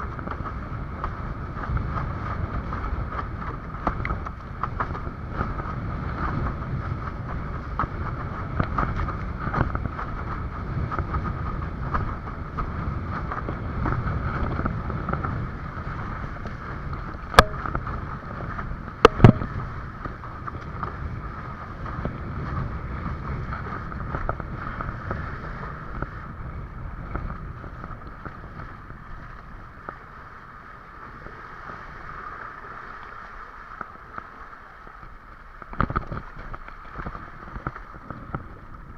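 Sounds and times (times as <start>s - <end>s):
rushing water: 0.0s - 38.9s
wind buffeting microphone: 0.0s - 38.9s
sharp knocks: 17.3s - 18.2s, 19.0s - 19.8s.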